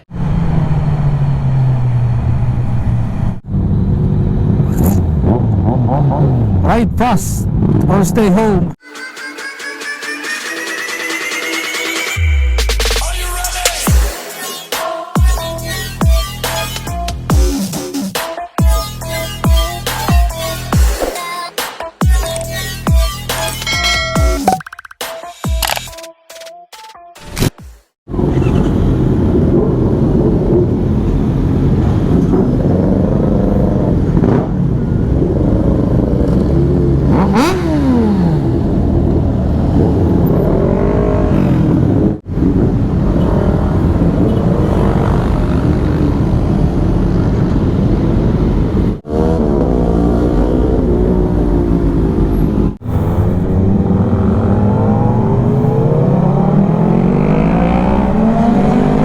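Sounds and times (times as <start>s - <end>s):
motorcycle engine accelerating: 0.0s - 6.7s, 28.1s - 59.0s.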